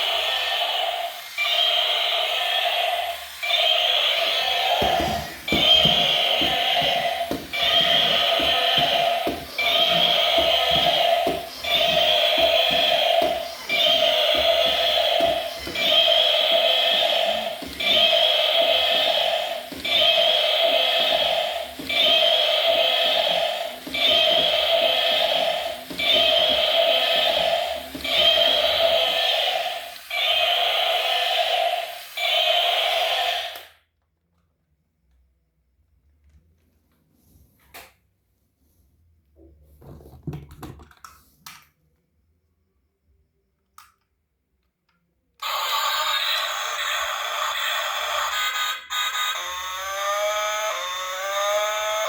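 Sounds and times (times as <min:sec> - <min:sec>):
toy electronic sound effect: 0:00.0 - 0:33.8, 0:45.4 - 0:52.0.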